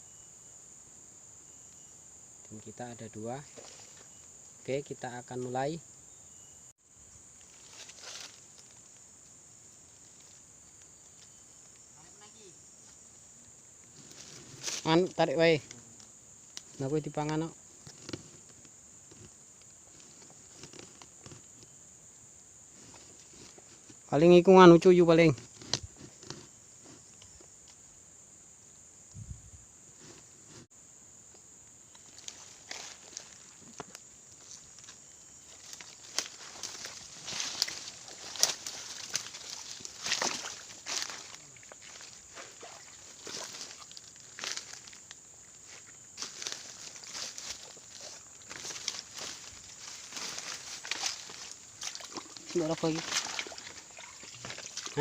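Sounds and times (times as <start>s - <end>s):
insects chirping chorus: 0.0s - 55.0s.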